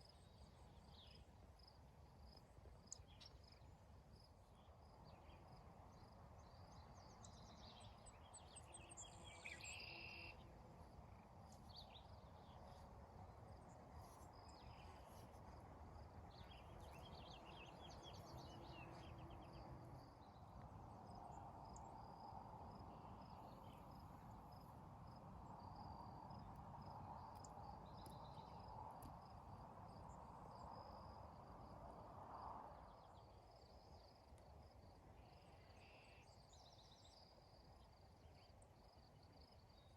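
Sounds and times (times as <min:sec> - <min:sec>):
insect chirr: 0:00.0 - 0:39.9.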